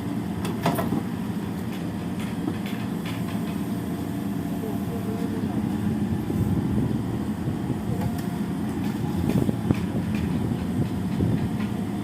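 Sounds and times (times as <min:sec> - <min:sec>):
excavator diesel engine running: 0:00.0 - 0:12.0
metallic clanks and knocks: 0:08.8 - 0:11.8.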